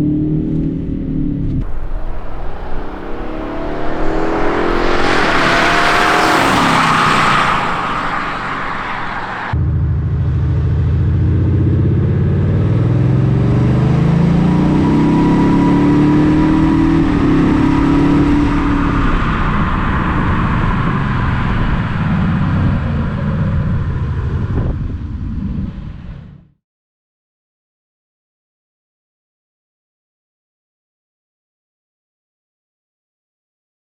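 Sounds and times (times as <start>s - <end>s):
diesel car engine accelerating: 1.6s - 9.6s, 10.5s - 24.5s.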